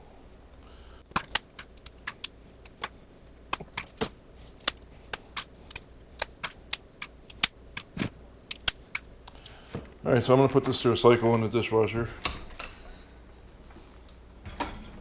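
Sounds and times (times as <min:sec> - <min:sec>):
plastic segments clicking and popping: 0:01.1 - 0:09.1.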